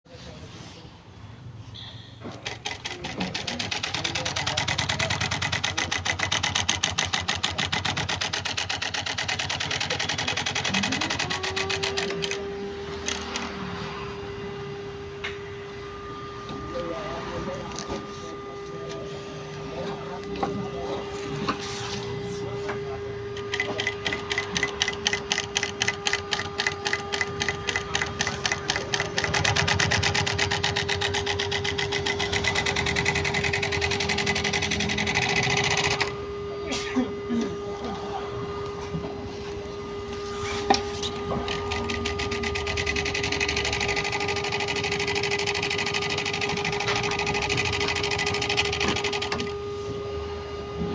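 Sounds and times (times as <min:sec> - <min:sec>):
sewing machine clattering: 0:02.3 - 0:12.4, 0:23.4 - 0:36.1, 0:41.5 - 0:49.5.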